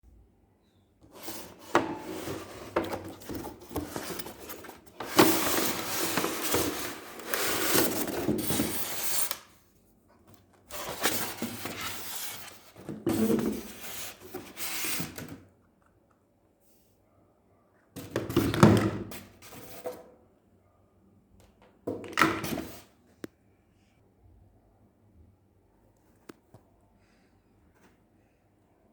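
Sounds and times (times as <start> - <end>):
cardboard and plastic scraping: 1.0 - 9.4, 10.6 - 15.4.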